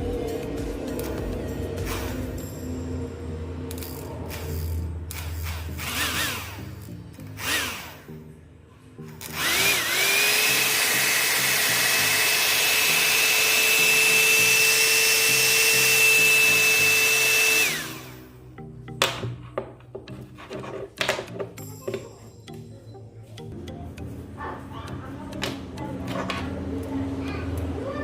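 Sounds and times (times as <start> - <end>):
motor whirring with high whine: 9.2 - 18.2.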